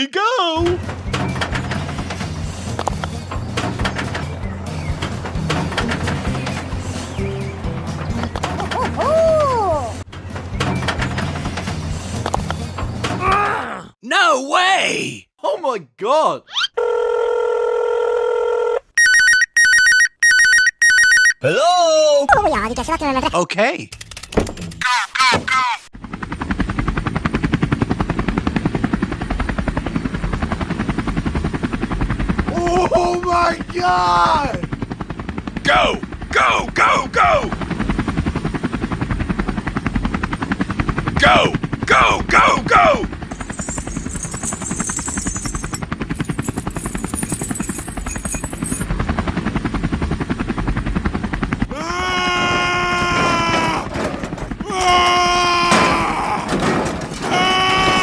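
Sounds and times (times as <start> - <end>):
small engine chugging: 0.6 - 13.2, 42.9 - 51.6
wailing voice-like tone: 8.6 - 10.0, 13.2 - 14.0, 51.7 - 54.0, 54.6 - 56.6.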